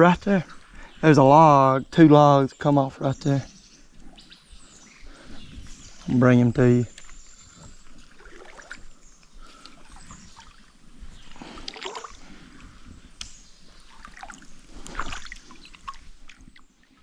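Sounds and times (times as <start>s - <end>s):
water splashing and sloshing: 3.8s - 17.0s.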